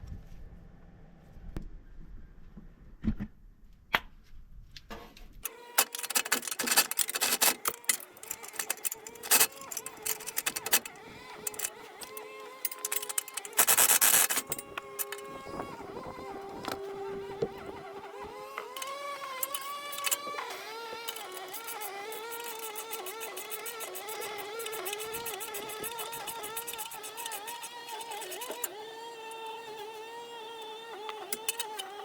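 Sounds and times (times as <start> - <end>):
metal tools and bolts clinking: 5.7 - 15.3, 18.7 - 28.7, 31.3 - 32.0.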